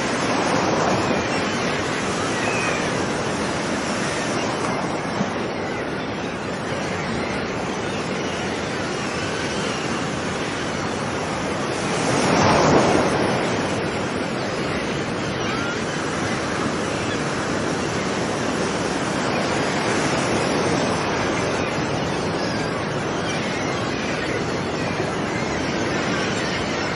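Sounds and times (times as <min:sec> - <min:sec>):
ocean surf washing: 0:00.0 - 0:26.9
wave breaking: 0:11.8 - 0:14.2.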